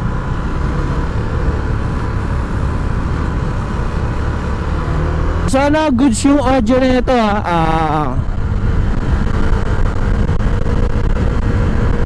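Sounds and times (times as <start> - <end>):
motorcycle road noise: 0.0 - 12.0
wind buffeting microphone: 8.2 - 12.0.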